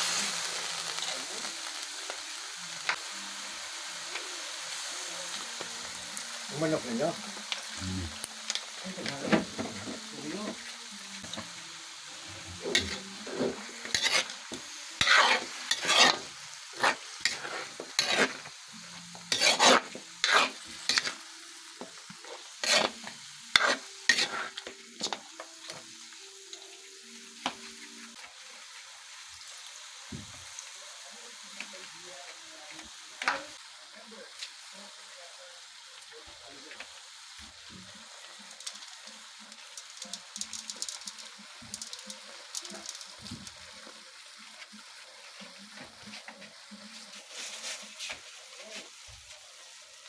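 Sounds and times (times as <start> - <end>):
chicken sizzling in a pan: 0.0 - 50.0
utensil scraping a pan: 12.5 - 18.5, 19.3 - 21.2, 22.2 - 25.2.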